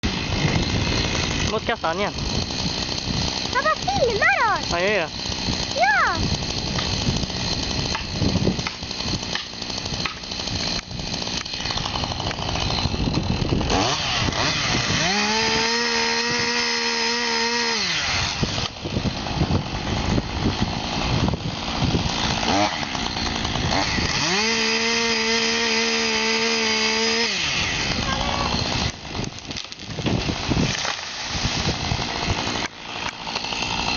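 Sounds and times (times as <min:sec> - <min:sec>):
chainsaw revving: 0:00.0 - 0:33.9.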